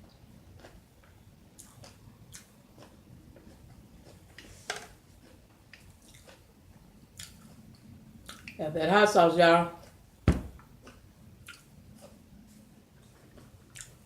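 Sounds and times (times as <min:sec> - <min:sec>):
wet mouth clicks and chewing: 0:00.5 - 0:04.5, 0:05.2 - 0:06.5, 0:07.1 - 0:08.6, 0:10.6 - 0:12.2, 0:13.0 - 0:14.0.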